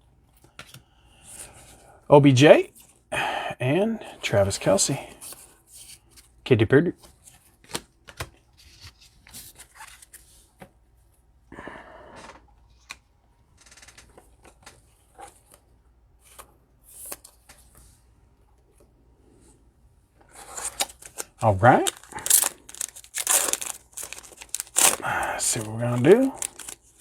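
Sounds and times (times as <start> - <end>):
card packs rustling and sliding: 20.2 - 27.0.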